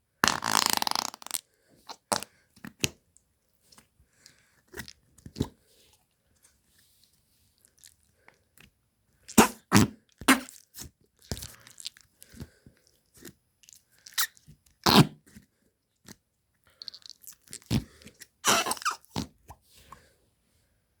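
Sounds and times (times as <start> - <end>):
fart sound effect: 0.2 - 1.4.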